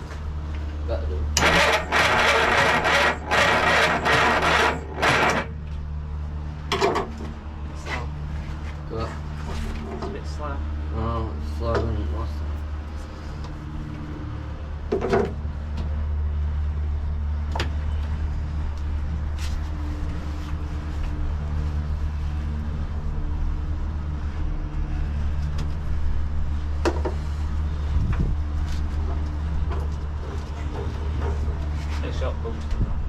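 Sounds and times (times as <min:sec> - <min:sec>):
engine cranking without firing: 0:01.4 - 0:05.6.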